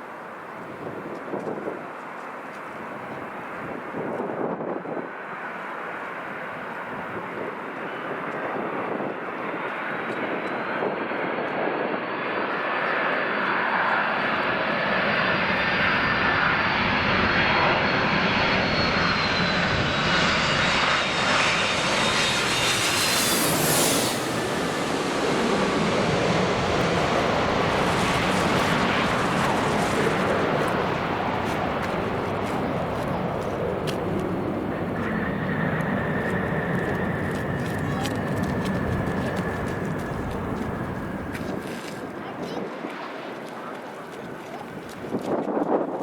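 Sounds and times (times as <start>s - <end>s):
airliner engines passing: 0.0s - 46.0s
high engine whine: 15.4s - 42.2s.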